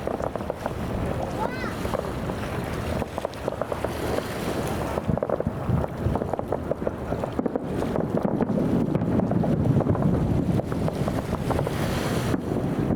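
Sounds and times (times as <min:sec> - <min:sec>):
wind noise on microphone: 0:00.0 - 0:12.9
fireworks crackling and popping: 0:03.1 - 0:04.3.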